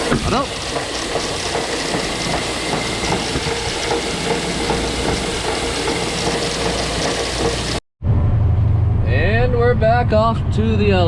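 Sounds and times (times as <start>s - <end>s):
grain machinery rattling and humming: 0.0s - 7.8s.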